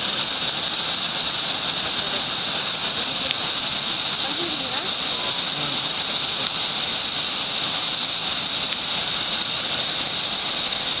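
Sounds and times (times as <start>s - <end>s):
steady high-pitched tone: 0.0s - 11.0s
waterfall roaring: 0.0s - 11.0s.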